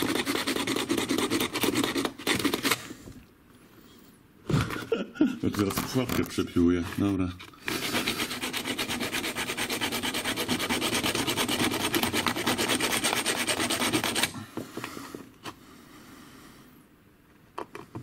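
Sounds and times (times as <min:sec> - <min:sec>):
hand tool cutting metal: 0:07.9 - 0:14.4.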